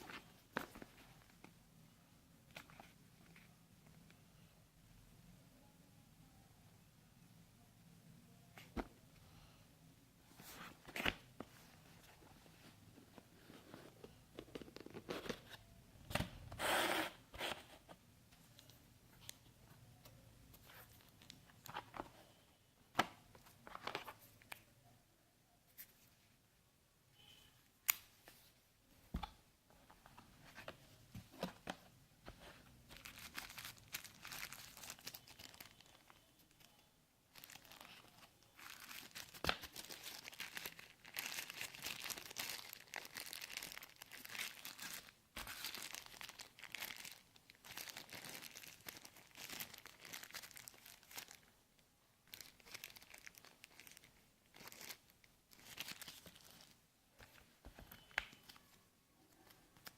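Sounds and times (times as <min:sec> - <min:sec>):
packaging crinkling and tearing: 0:32.9 - 0:36.6, 0:37.3 - 0:51.5, 0:52.2 - 0:56.8.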